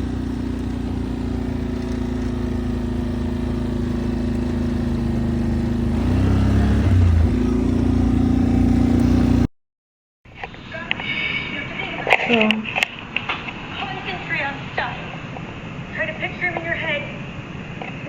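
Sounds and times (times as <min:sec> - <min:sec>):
quad bike engine droning: 0:00.0 - 0:09.5.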